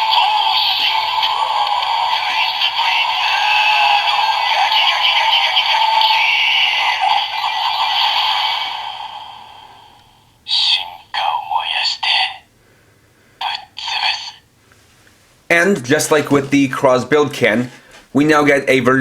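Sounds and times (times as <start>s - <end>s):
tinny toy speaker music and effects: 0.0s - 12.5s, 13.4s - 14.4s.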